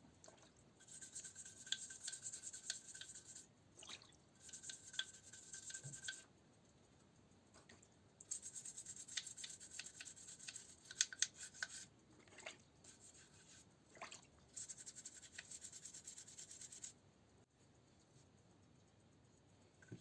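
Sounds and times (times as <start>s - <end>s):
scrubbing strokes by hand: 0.8s - 3.5s, 4.4s - 6.2s, 8.3s - 16.9s.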